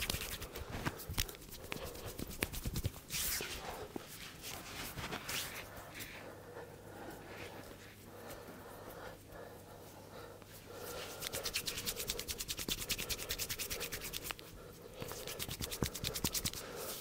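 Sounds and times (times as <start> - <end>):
hands rubbing hair and scalp: 0.0 - 6.3, 10.6 - 17.0.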